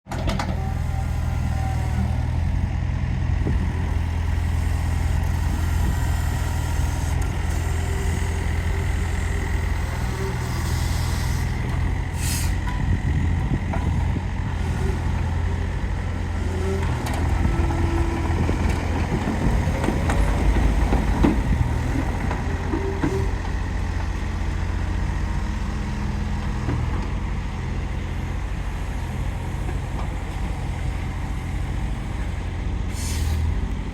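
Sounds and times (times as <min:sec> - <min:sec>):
excavator engine humming: 0:00.1 - 0:33.9
short hiss: 0:12.2 - 0:12.6.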